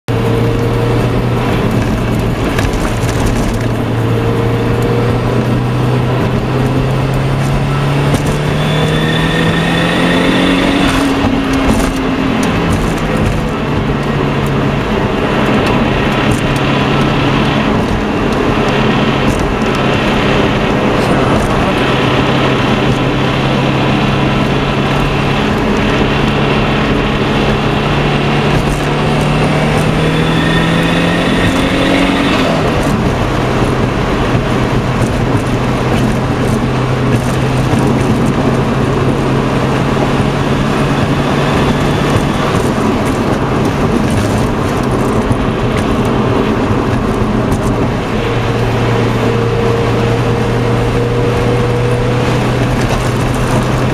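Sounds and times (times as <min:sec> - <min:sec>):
turbocharged car engine under load: 0:00.1 - 0:53.9.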